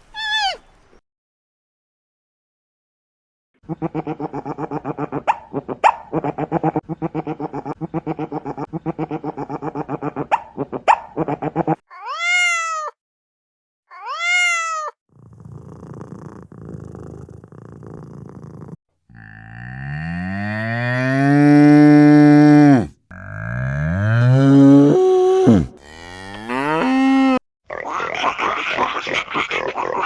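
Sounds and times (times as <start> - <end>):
cat meowing: 11.9 - 13.0, 13.9 - 15.0
cat purring pulses: 15.2 - 18.8.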